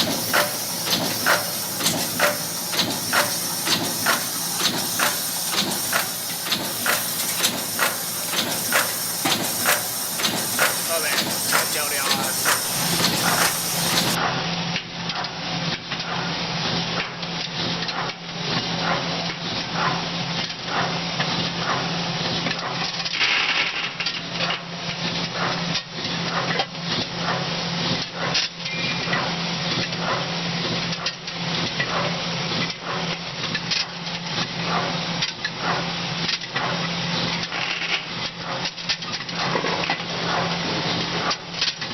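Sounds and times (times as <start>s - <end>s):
bolt forming machine knocking: 0.0s - 14.2s.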